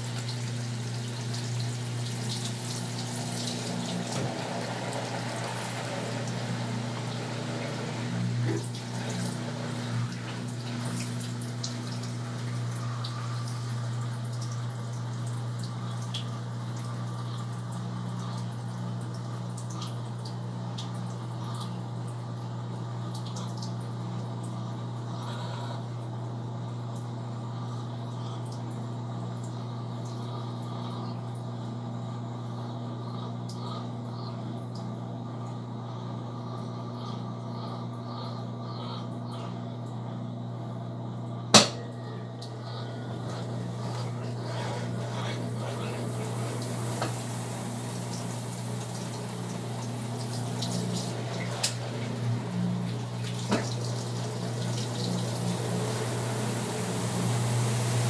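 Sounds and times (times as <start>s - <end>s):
water trickling and dripping: 0.0s - 22.4s, 43.3s - 58.0s
washing machine running: 0.0s - 58.0s.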